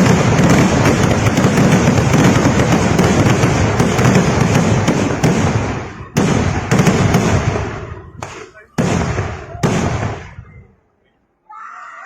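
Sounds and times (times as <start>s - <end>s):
firecracker barrage: 0.0s - 10.7s.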